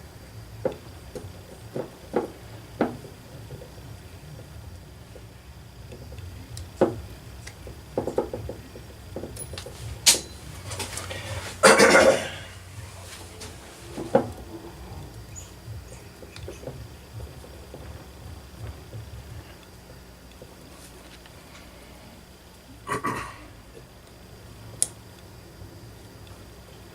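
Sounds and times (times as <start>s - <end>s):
metal parts and tools clicking: 9.2s - 11.2s.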